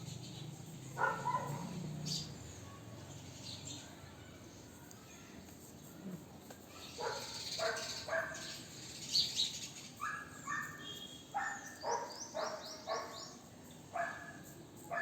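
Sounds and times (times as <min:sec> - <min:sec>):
dog barking: 0:01.0 - 0:01.8, 0:07.0 - 0:08.5, 0:10.0 - 0:13.3, 0:14.0 - 0:15.0
bird chirping: 0:07.0 - 0:14.3.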